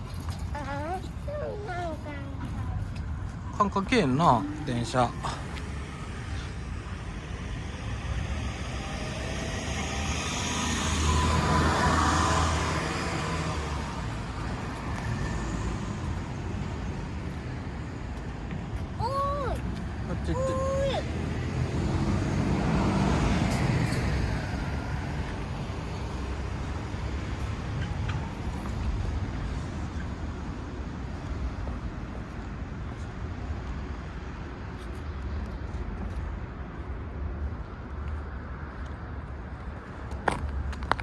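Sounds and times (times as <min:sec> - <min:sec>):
steady traffic noise: 0:00.0 - 0:41.0
vehicle passing by: 0:03.4 - 0:18.2, 0:19.1 - 0:31.6.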